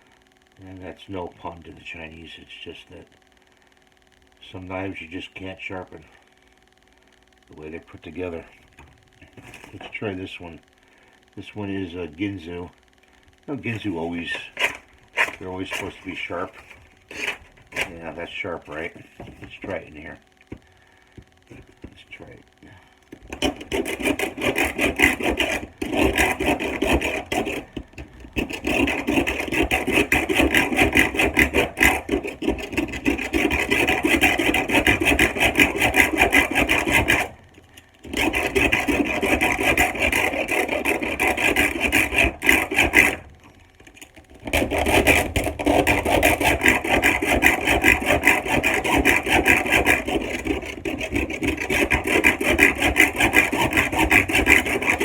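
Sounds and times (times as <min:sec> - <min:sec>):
knife scraping through sharpener: 0:13.9 - 0:18.1.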